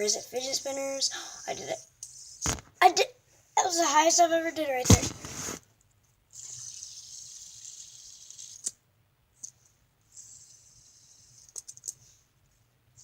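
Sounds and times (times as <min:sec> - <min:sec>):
fidget spinner whirring: 0:00.0 - 0:02.6, 0:06.3 - 0:08.8, 0:09.4 - 0:12.1.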